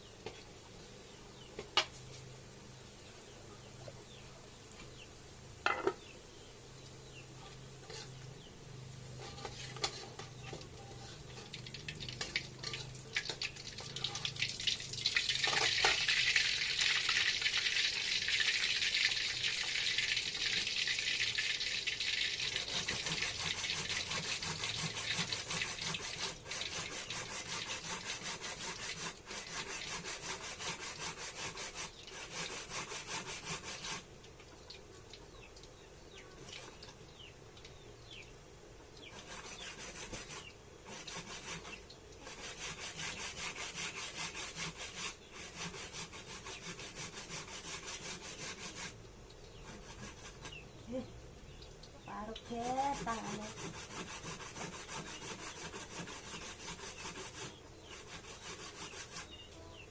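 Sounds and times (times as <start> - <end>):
food sizzling in hot oil: 7.8 - 34.1.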